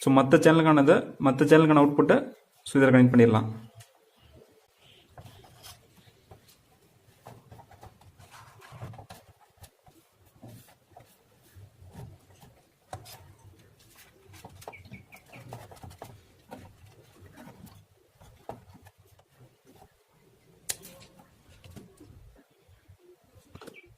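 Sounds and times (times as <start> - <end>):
faint bird chirps: 14.6 - 15.5, 22.5 - 23.9
faint clicks from wires and connectors: 20.6 - 22.1.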